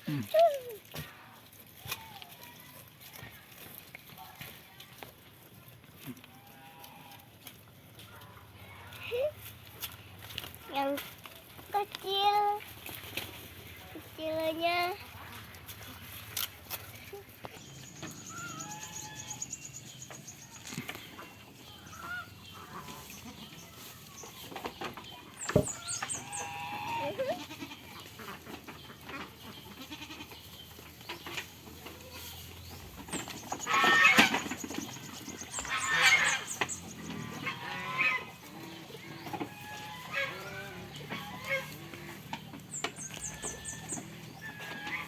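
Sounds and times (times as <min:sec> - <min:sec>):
goats bleating: 0:22.6 - 0:23.6, 0:26.0 - 0:28.2, 0:29.7 - 0:30.5, 0:35.6 - 0:42.3.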